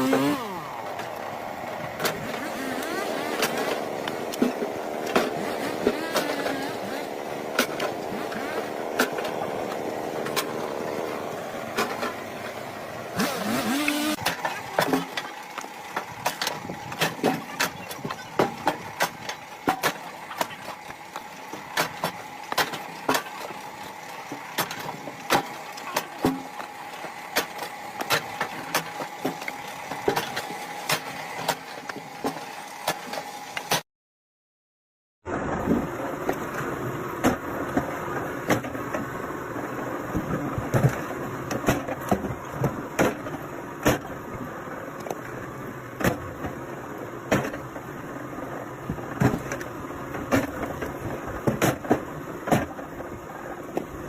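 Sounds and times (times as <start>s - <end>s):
machine humming: 0.0s - 32.7s.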